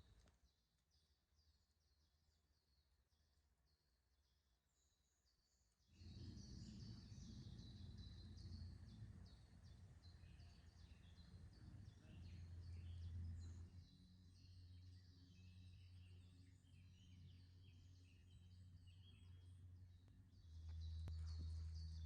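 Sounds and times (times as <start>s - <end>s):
small birds singing: 0.0s - 22.0s
low steady rumble: 6.0s - 22.0s.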